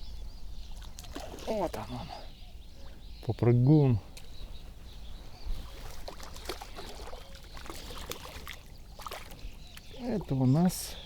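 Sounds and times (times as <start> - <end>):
fish splashing: 5.6 - 9.5
water dripping: 5.7 - 10.4.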